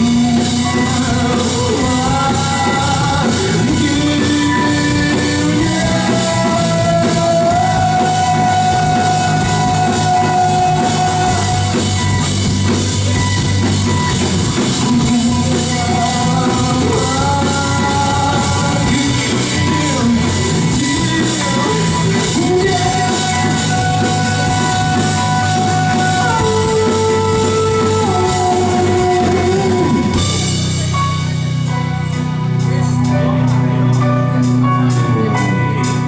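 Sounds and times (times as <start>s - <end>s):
person singing long notes: 0.0s - 12.5s, 14.8s - 30.6s
rock music with drums and guitar: 0.0s - 36.0s.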